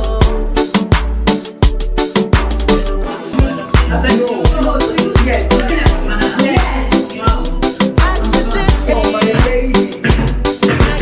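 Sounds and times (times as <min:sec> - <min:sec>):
afrobeat music: 0:00.0 - 0:11.0
sharp percussion: 0:03.4 - 0:11.0.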